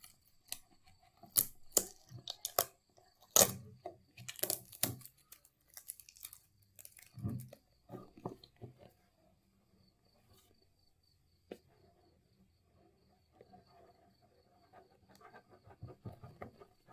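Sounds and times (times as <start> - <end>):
packaging crinkling: 4.2 - 7.2.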